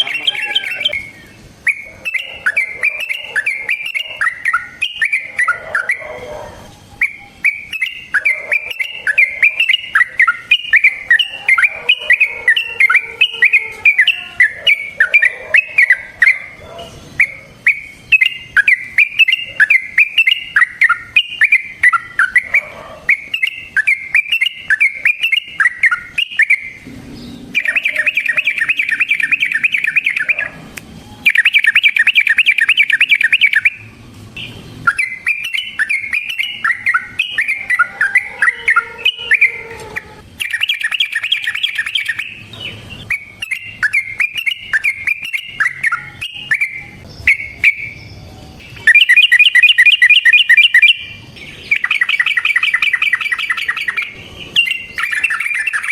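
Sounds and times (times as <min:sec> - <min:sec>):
bulbul singing bubbly chirps: 0:00.0 - 0:06.1, 0:07.0 - 0:16.6, 0:17.2 - 0:26.8, 0:27.5 - 0:30.6, 0:31.2 - 0:55.9.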